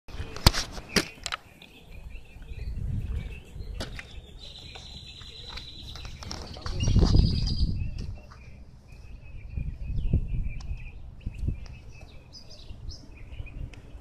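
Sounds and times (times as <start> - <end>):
wind noise on microphone: 1.8 - 4.5, 6.0 - 14.0.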